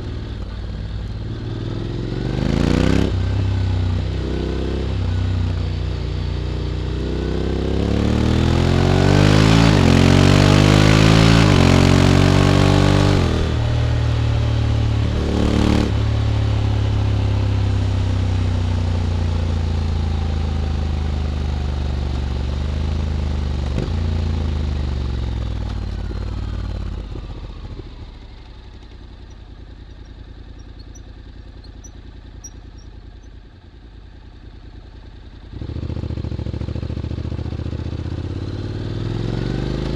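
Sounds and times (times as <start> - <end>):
motorcycle engine accelerating: 0.0 - 39.9
wind rushing: 14.7 - 16.6.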